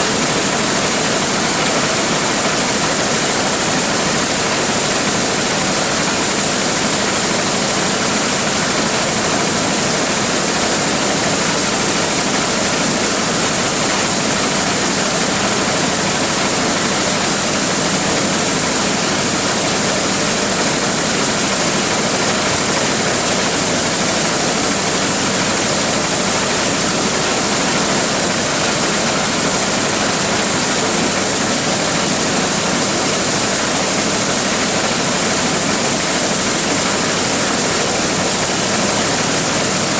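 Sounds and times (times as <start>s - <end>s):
corn sheller machine rushing: 0.0s - 39.9s.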